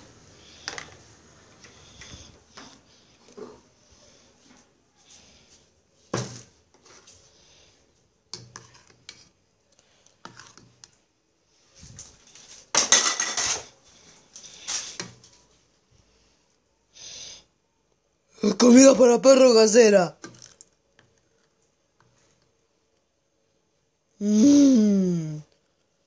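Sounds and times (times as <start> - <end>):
dishes and cutlery clattering: 12.7 - 13.7.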